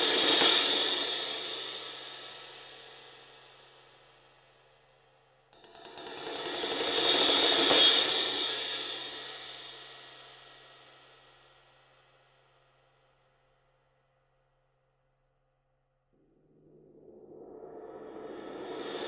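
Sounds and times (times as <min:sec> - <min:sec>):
crash cymbal ringing: 0:00.0 - 0:03.2, 0:05.6 - 0:10.8.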